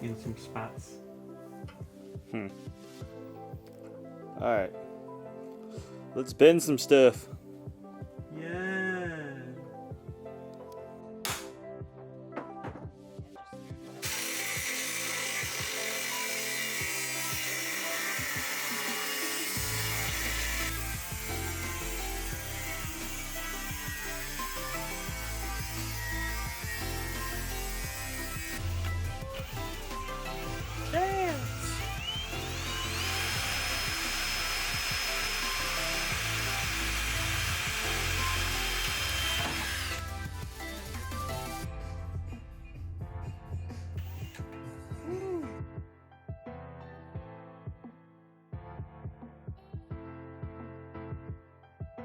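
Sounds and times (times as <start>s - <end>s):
background music with steady beat: 0.0s - 52.0s
power tool grinding steel: 14.0s - 41.6s.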